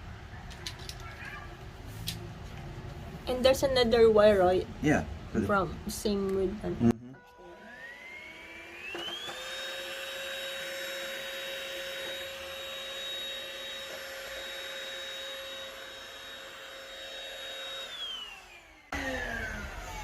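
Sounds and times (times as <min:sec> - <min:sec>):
small electric motor whine: 0:07.2 - 0:20.0.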